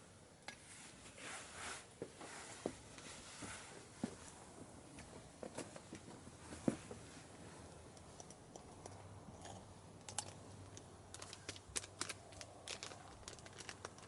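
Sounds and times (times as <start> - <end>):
wood fire crackling: 10.7 - 14.0.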